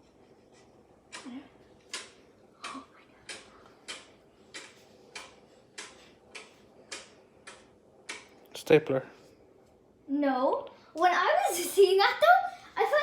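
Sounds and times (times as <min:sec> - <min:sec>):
sharp clicks: 0:01.9 - 0:08.4.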